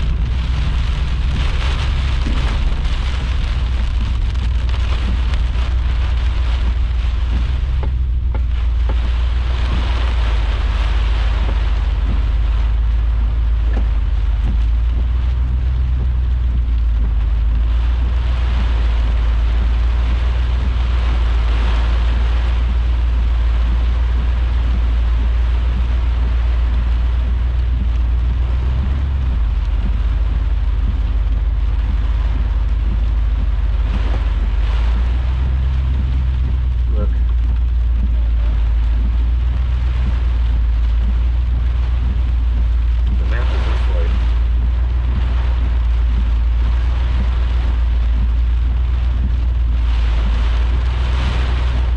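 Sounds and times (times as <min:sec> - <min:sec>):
rain hissing: 0:00.0 - 0:51.9
wind noise on microphone: 0:00.0 - 0:51.9.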